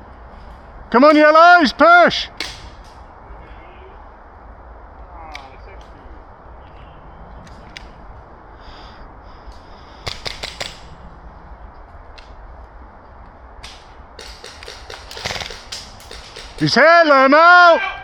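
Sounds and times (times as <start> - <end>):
airsoft guns firing: 2.4 - 3.0, 10.0 - 11.0, 13.6 - 17.6
low rumble: 2.6 - 10.0, 10.7 - 14.2.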